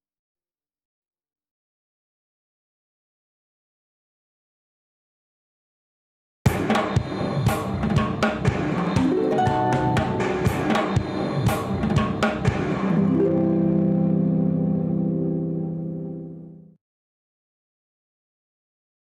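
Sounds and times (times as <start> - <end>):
drum and cymbal hits: 6.5 - 13.0
long held chord: 9.1 - 11.1, 13.0 - 16.7.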